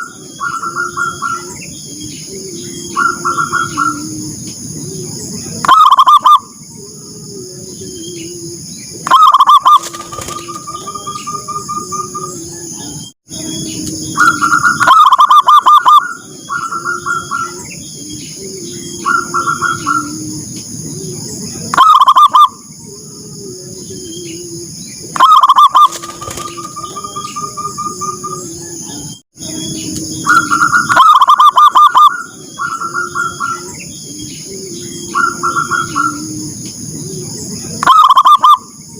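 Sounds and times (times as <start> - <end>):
doves staccato cooing: 0.0 - 38.8.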